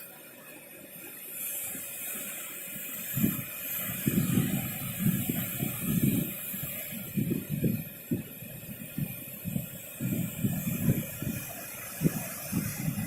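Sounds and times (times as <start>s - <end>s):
ocean waves and surf: 0.0s - 13.0s
wind buffeting microphone: 3.1s - 13.0s.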